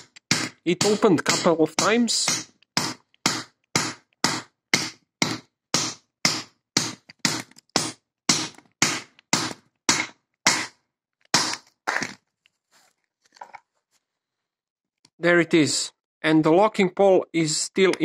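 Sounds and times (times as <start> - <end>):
wrench hammering a padlock: 0.0 - 11.7.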